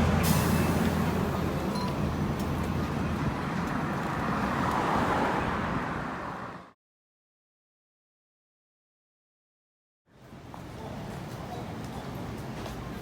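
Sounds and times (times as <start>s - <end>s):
road traffic: 0.0s - 6.8s, 10.1s - 13.0s.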